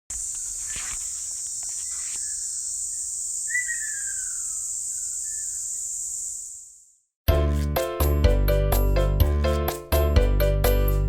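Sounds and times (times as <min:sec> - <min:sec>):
insect chorus: 0:00.1 - 0:07.1
falling bird call: 0:01.7 - 0:06.1.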